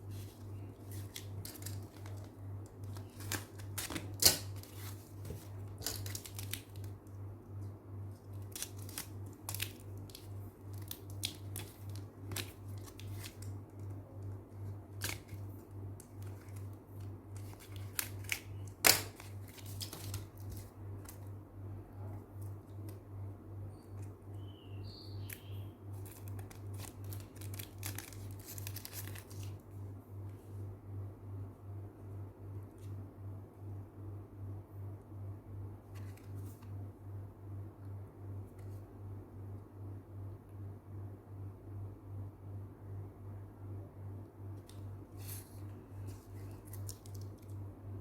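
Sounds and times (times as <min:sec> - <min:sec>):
packaging crinkling and snapping: 0:00.8 - 0:07.1, 0:08.1 - 0:21.3, 0:25.2 - 0:29.6, 0:44.6 - 0:47.6.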